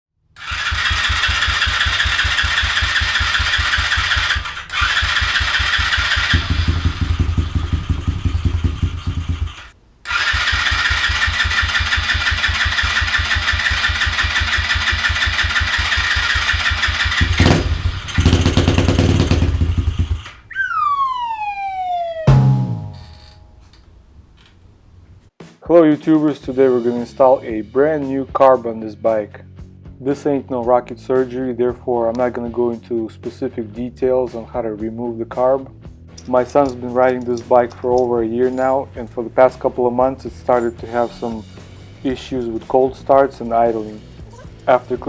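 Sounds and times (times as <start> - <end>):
motorcycle engine running: 0.7 - 9.7, 12.1 - 20.2, 36.1 - 45.0.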